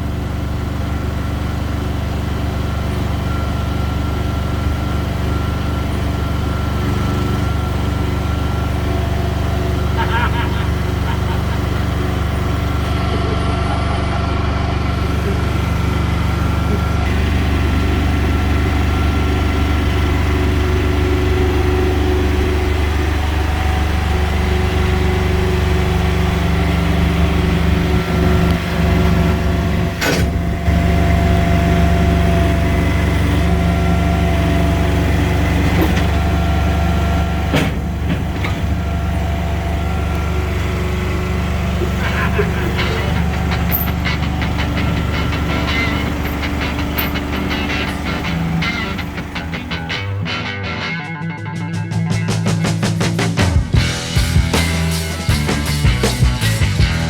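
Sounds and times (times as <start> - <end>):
excavator engine whining: 0.0 - 57.0
sharp metallic clanks: 42.6 - 49.4.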